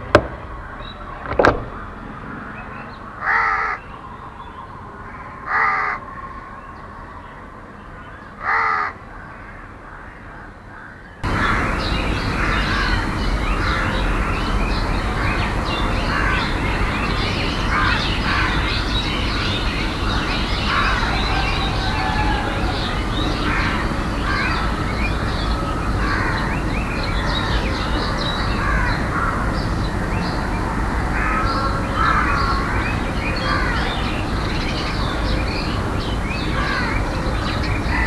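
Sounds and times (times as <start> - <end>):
crow cawing: 3.2 - 3.8, 5.4 - 6.0, 8.4 - 29.9, 30.5 - 34.1, 36.5 - 37.3
small birds chirping: 10.4 - 38.0.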